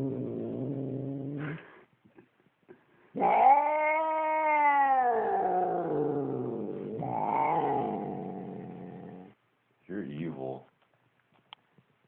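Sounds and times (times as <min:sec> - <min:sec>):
cat growling yowl: 0:03.1 - 0:09.4.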